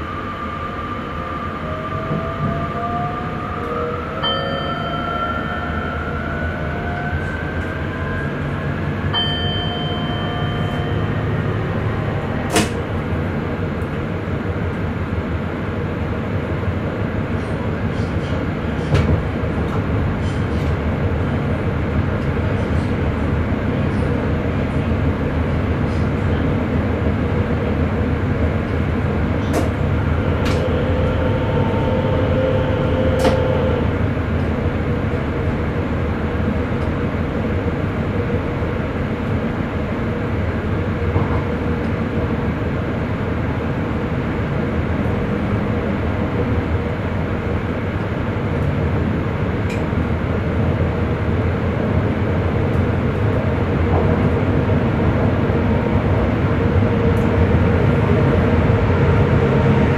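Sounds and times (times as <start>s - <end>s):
train wheels rumbling: 0.0s - 59.9s.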